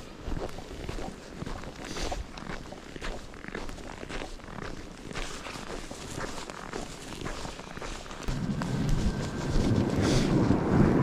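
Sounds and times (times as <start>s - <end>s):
footsteps crunching in snow: 0.0s - 10.7s
wind buffeting microphone: 8.3s - 11.0s.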